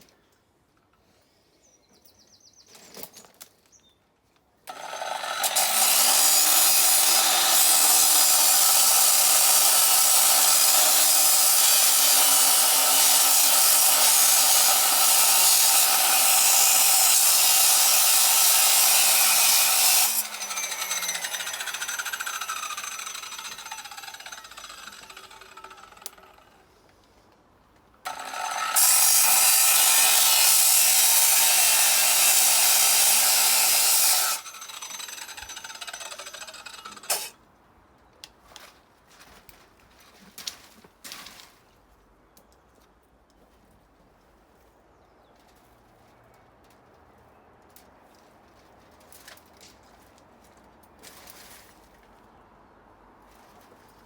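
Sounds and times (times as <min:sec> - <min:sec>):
angle grinder running: 0:04.7 - 0:26.0, 0:28.1 - 0:37.3.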